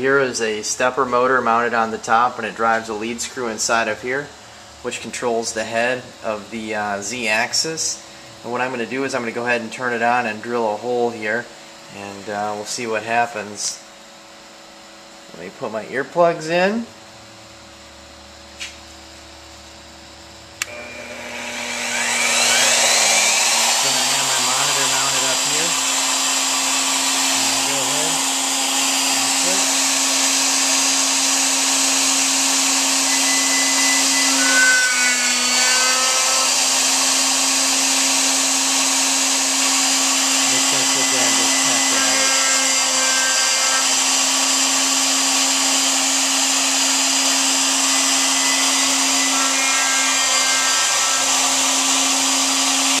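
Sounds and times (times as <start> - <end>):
router spindle motor whine: 20.6 - 53.0.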